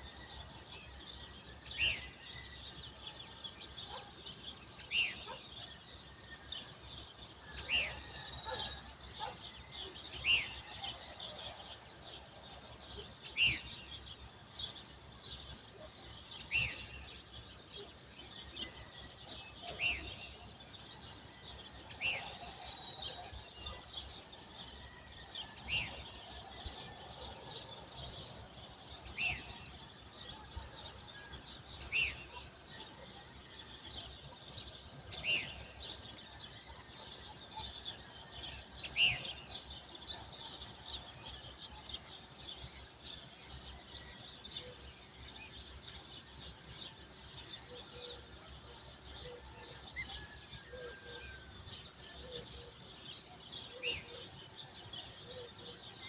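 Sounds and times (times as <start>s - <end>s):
small birds chirping and twittering: 0.0s - 56.0s.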